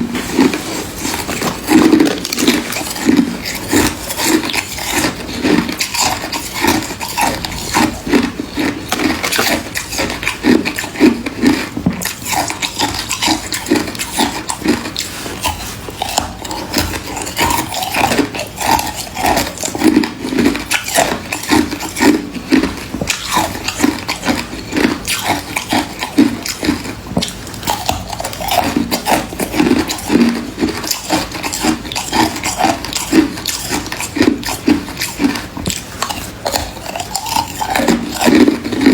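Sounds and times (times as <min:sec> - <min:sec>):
person chewing crunchy frost: 0:00.0 - 0:38.9.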